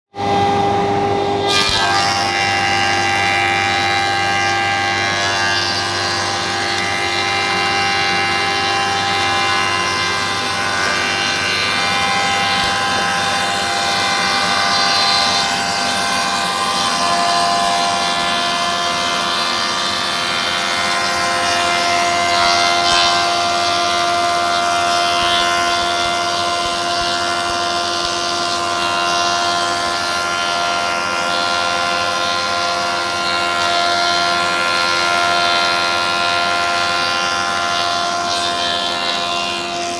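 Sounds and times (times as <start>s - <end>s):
woodworking machine running: 0.2s - 39.9s.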